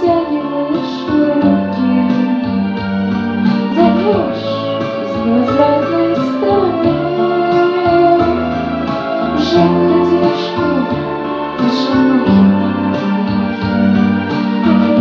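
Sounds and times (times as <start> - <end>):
woman singing with vibrato: 0.0 - 2.8, 3.6 - 15.0
instrumental accompaniment: 0.0 - 15.0.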